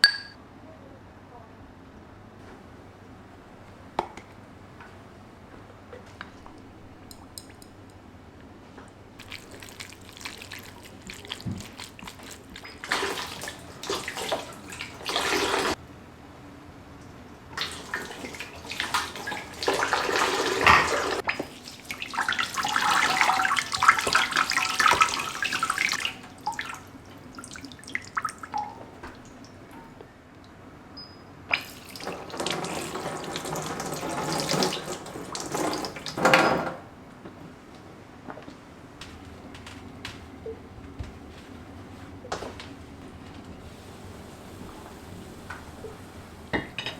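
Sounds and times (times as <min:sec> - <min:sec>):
tap running into sink: 0:09.2 - 0:15.8, 0:17.6 - 0:26.8, 0:31.5 - 0:36.8
water splashing: 0:09.2 - 0:15.8, 0:17.6 - 0:29.8, 0:31.5 - 0:36.2.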